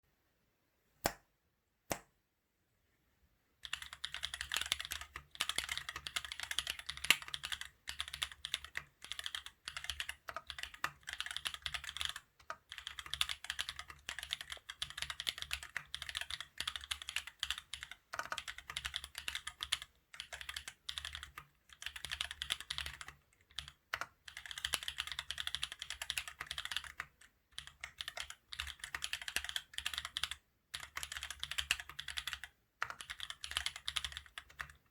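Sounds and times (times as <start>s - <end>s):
mechanical keyboard typing: 3.6s - 34.9s.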